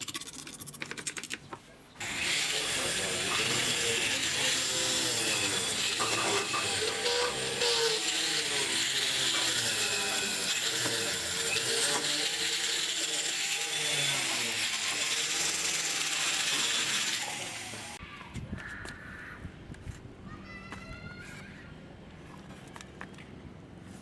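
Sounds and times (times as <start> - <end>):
mechanical rasping whirring: 2.0 - 18.0.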